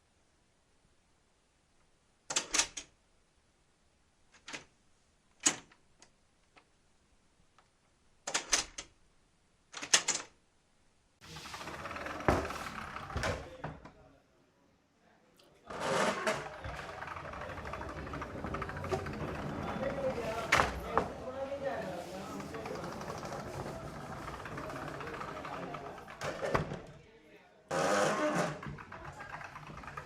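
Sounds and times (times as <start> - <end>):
door handle and latch clicking: 8.3 - 8.9, 9.8 - 10.3
door rattling: 15.7 - 21.2, 27.9 - 30.0.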